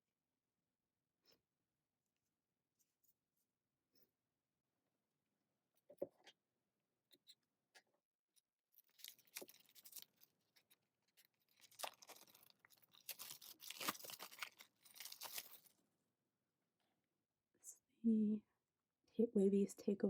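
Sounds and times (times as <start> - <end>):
plastic wrapping crackling and tearing: 8.8 - 15.8.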